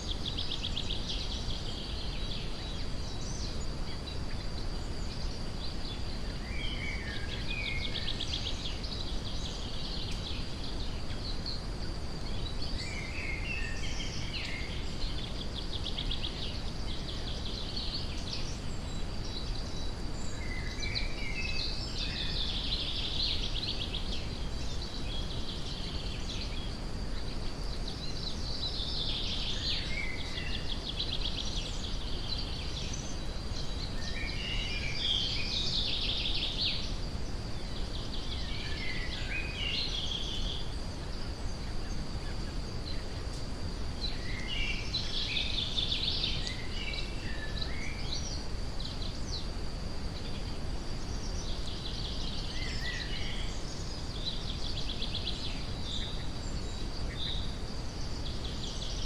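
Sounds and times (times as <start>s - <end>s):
brown noise hiss: 0.0s - 59.0s.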